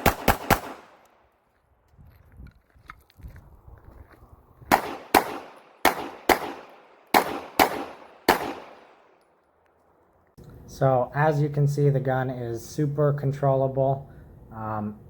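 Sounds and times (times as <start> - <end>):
pistol shots: 0.0 - 1.2, 4.7 - 9.2.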